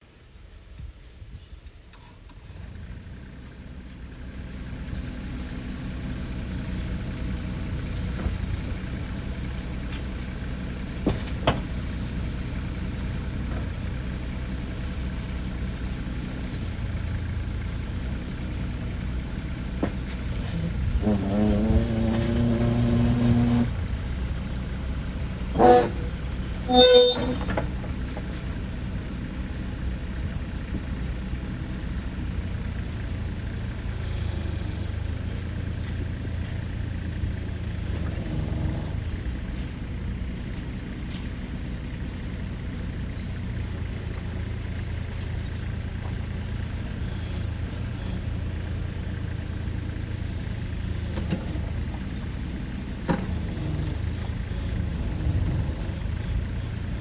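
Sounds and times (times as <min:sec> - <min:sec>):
excavator diesel engine running: 0:02.4 - 0:57.0
short horn toots: 0:25.5 - 0:27.7.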